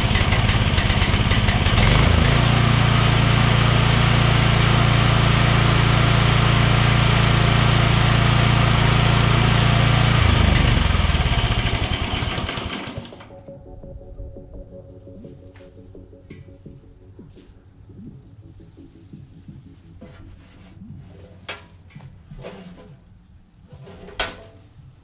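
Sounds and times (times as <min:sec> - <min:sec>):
small gasoline engine running: 0:00.0 - 0:13.3.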